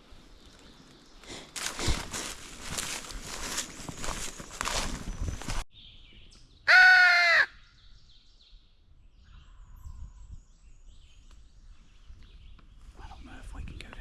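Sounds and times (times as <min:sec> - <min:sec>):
footsteps in dry leaves: 0:00.0 - 0:05.6
crow cawing: 0:06.7 - 0:07.6.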